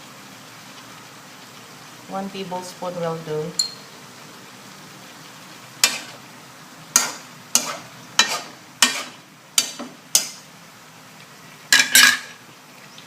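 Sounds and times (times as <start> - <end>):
spatula scraping a wok: 5.8 - 6.2, 6.9 - 10.4.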